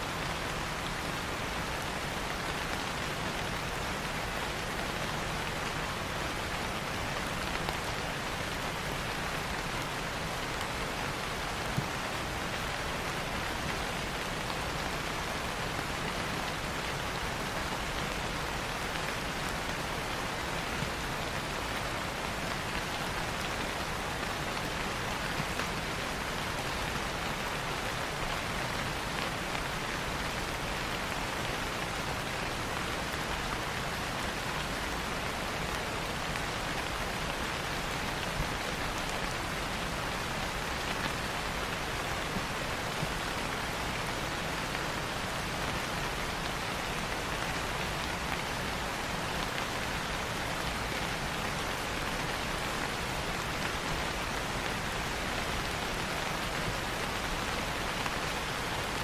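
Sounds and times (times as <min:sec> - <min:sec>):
steady rain hiss: 0:00.0 - 0:59.0.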